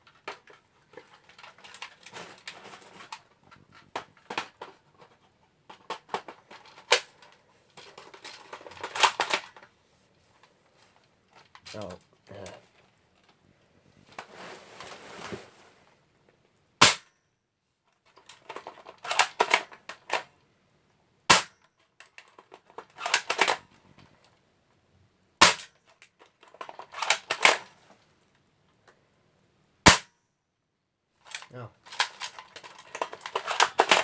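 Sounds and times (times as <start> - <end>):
gun handling clatter: 0.0 - 9.7, 10.4 - 13.4, 18.0 - 20.4, 21.3 - 24.4, 25.4 - 28.1, 31.2 - 34.0
bb gun shots: 16.8 - 17.0, 21.3 - 21.6, 25.4 - 25.7, 29.9 - 30.1.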